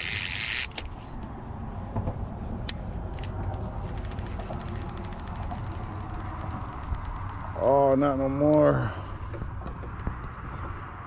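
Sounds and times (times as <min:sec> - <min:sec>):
fishing reel drag buzzing: 0:00.0 - 0:00.8, 0:03.8 - 0:08.0
fishing reel clicking: 0:00.0 - 0:00.9, 0:03.7 - 0:08.1
low rumble: 0:01.9 - 0:09.8.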